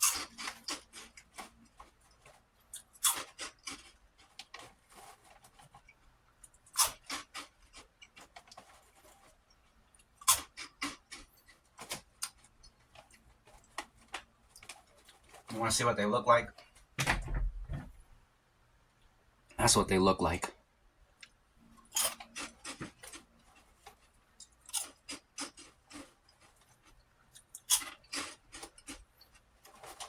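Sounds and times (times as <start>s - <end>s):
crisp crackers crunching: 0.0s - 15.9s, 21.2s - 30.0s.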